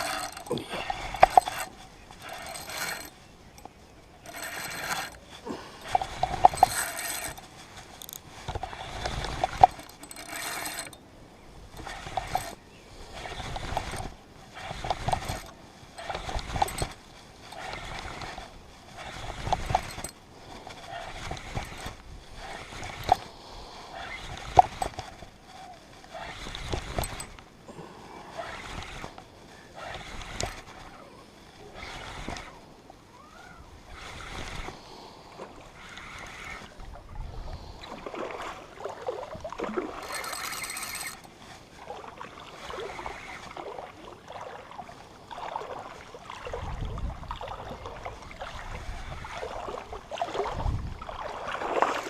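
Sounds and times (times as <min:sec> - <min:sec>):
fishing reel clicking rattle: 0:00.0 - 0:05.2, 0:05.8 - 0:11.0, 0:11.7 - 0:23.3, 0:24.1 - 0:27.4, 0:29.9 - 0:30.9, 0:39.9 - 0:41.4.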